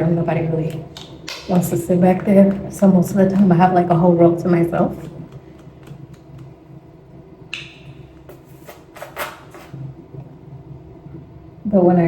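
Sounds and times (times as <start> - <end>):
low steady hum: 0.0 - 12.0
scratchy rustles: 8.3 - 9.8.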